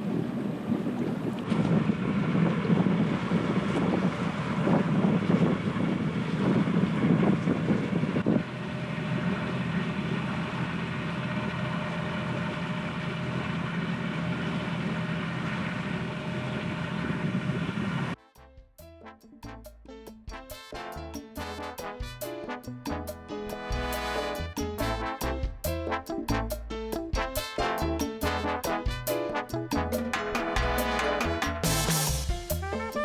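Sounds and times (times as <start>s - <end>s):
wind buffeting microphone: 0.0s - 9.4s
water rushing along hull: 0.0s - 18.2s.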